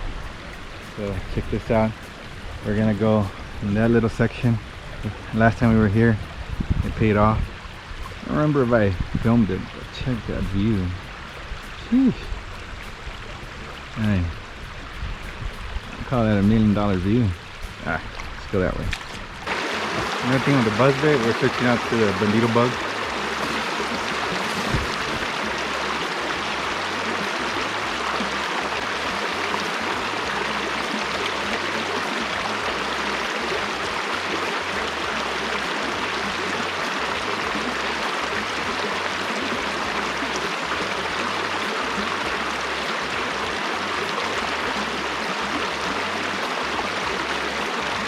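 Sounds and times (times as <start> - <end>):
river rushing over rapids: 17.0 - 48.0.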